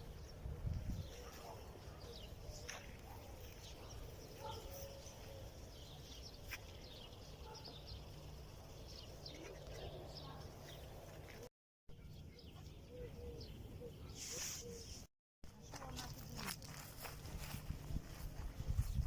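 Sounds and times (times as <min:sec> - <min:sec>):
birds chirping: 0:00.0 - 0:15.1.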